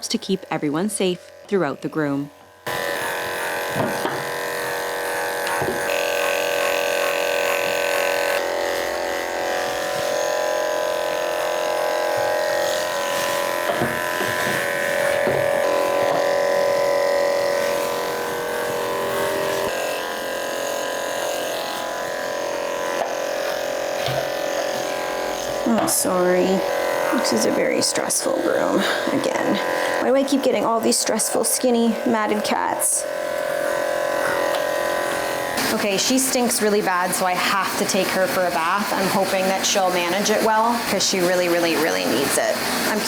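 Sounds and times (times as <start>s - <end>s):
electric clippers buzzing: 0.0s - 43.0s.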